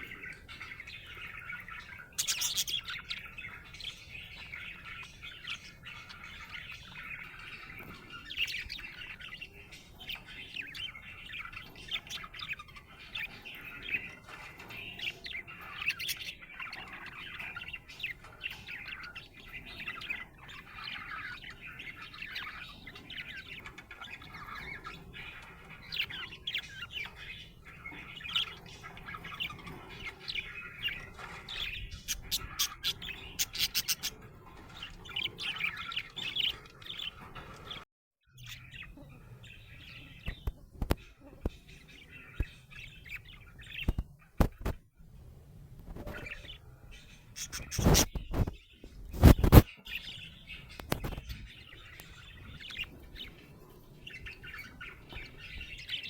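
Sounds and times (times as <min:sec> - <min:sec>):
budgerigar chirping: 0:00.0 - 0:34.3, 0:47.3 - 0:48.5, 0:49.2 - 0:50.2.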